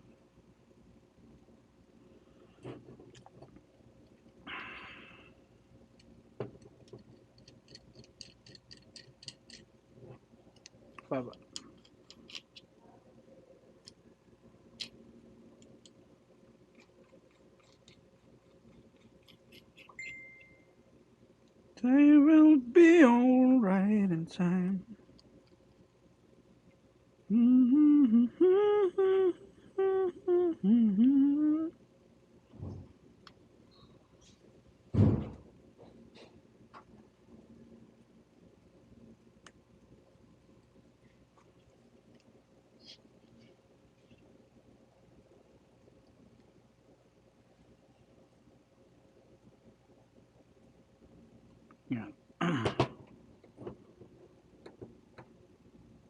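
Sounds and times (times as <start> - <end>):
person humming: 27.3 - 31.8.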